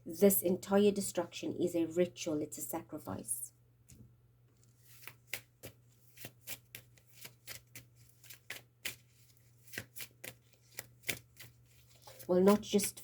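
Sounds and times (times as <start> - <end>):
cards being shuffled: 4.6 - 13.0.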